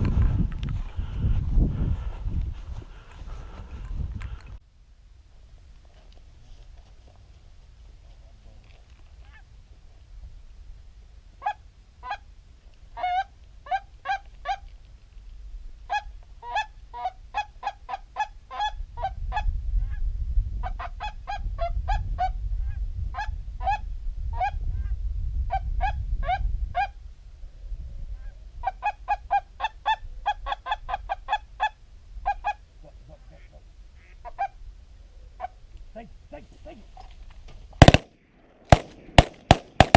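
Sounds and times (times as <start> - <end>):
geese honking: 28.6 - 34.6.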